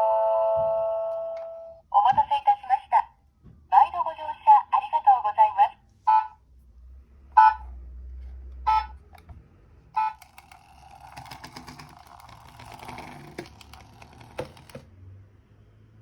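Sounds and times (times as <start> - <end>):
electronic horn beeps: 0.0 - 1.8, 6.1 - 6.4, 7.4 - 7.7, 8.7 - 9.0, 10.0 - 10.3
toy clicking and whirring: 10.0 - 14.8.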